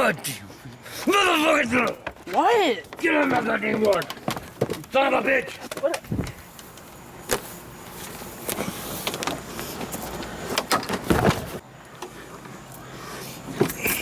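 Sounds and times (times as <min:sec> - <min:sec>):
knocks and clatters: 0:01.7 - 0:07.4.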